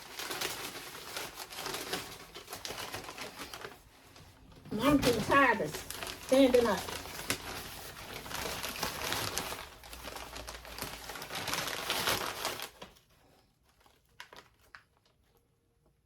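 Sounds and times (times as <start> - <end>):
packaging wrap crinkling: 0.0 - 15.6.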